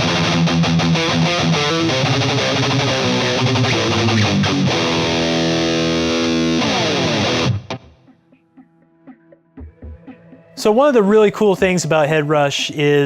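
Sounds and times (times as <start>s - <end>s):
distorted electric guitar: 0.0s - 8.3s.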